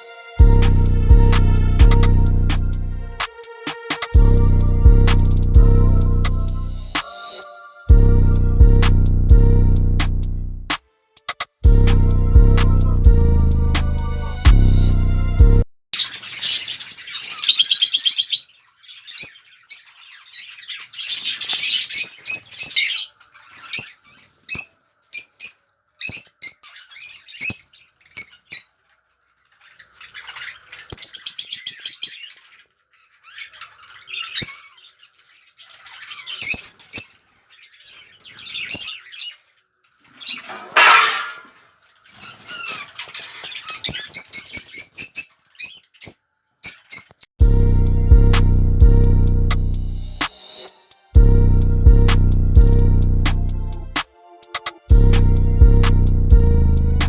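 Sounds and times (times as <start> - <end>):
budgerigars chirping and chattering: 16.0 - 28.7, 29.5 - 40.6, 42.0 - 47.2.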